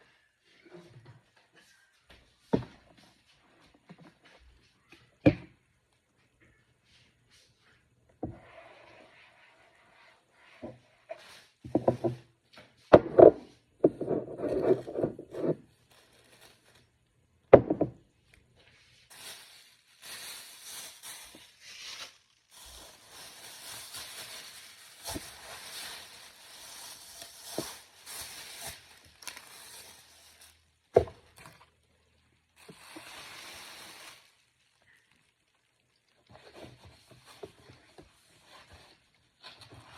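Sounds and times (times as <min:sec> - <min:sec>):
items knocked or set down: 0:12.9 - 0:15.6, 0:17.5 - 0:18.0
scraping and rustling: 0:13.2 - 0:16.9, 0:18.6 - 0:30.6.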